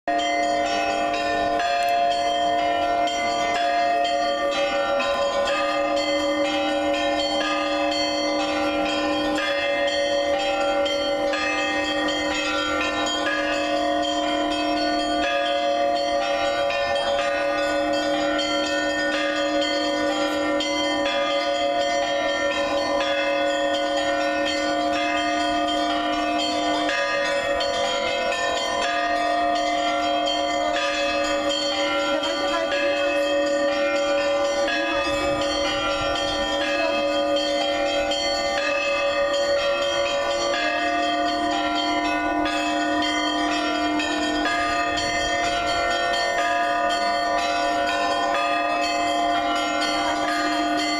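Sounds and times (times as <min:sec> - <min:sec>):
church bells pealing: 0:00.1 - 0:50.9
deep bell tolling: 0:00.1 - 0:50.9.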